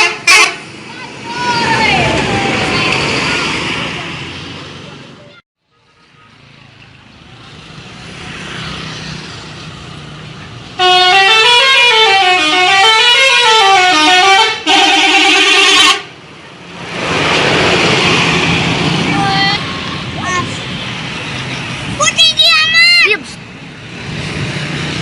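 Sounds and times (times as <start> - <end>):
bus musical horn melody: 0.0 - 0.7, 10.8 - 16.1
vehicle noise: 0.0 - 25.0
loud rush of noise: 0.2 - 5.3, 16.1 - 25.0.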